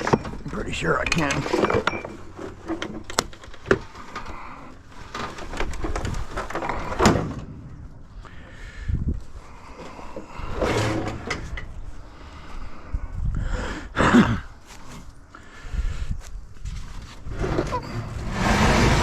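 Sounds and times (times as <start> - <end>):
scrap metal knocking and scraping: 9.8 - 11.7, 17.2 - 19.0.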